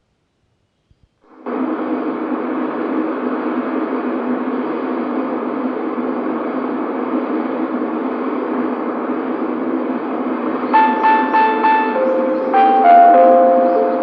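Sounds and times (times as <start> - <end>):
radio noise hiss from loudspeakers: 1.3 - 10.7
chime melody note: 10.8 - 14.0.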